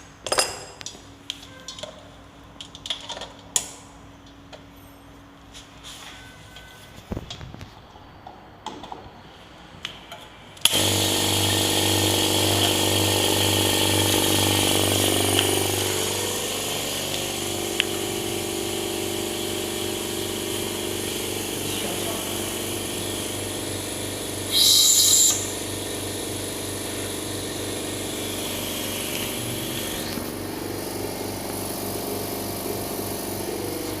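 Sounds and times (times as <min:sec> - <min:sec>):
air compressor humming: 0:10.6 - 0:34.0
loud hiss of air: 0:24.5 - 0:25.6.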